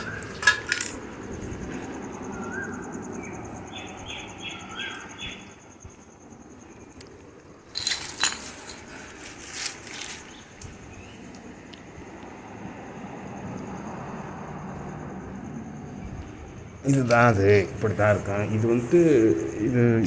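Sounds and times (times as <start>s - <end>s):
clicks and clatters of parts: 0.0s - 1.1s, 6.9s - 11.8s
bird chirping: 0.0s - 1.4s, 2.0s - 7.0s
faint high insect-like whine: 0.0s - 20.0s.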